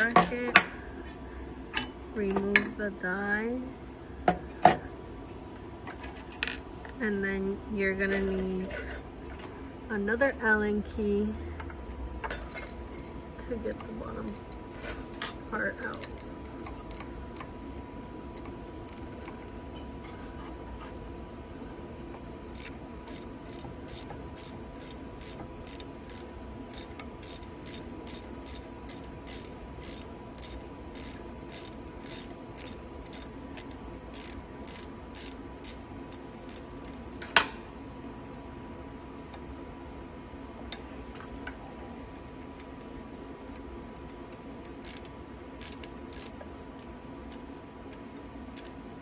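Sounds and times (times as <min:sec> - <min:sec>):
steady hum: 0:00.0 - 0:49.0.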